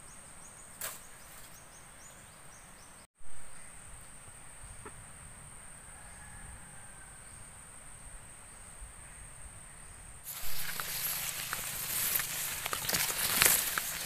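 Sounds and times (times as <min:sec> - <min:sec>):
clicks and rustles: 0:10.3 - 0:14.0
high-pitched insect trill: 0:10.3 - 0:14.0
loud hiss: 0:10.3 - 0:14.0.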